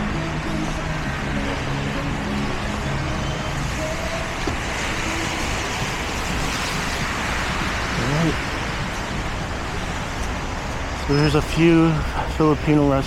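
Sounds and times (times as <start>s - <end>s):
tyres hissing through slush: 2.7s - 13.0s.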